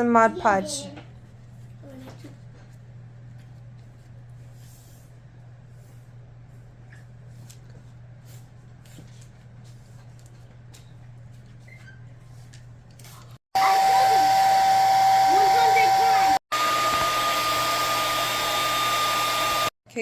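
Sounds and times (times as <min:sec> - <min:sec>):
hair dryer whining: 0:13.6 - 0:19.8.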